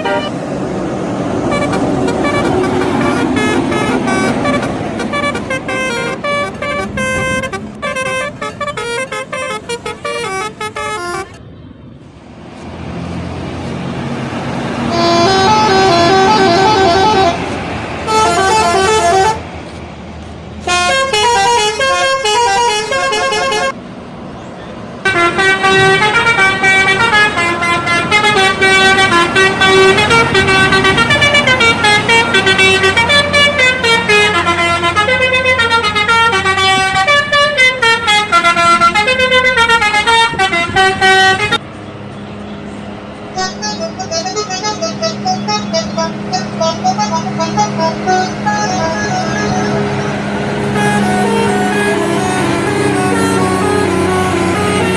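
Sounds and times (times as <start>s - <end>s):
bus musical horns playing tunes: 0.0s - 11.4s, 13.6s - 23.8s, 25.0s - 41.6s, 43.2s - 54.9s
bus engine running: 0.0s - 54.9s.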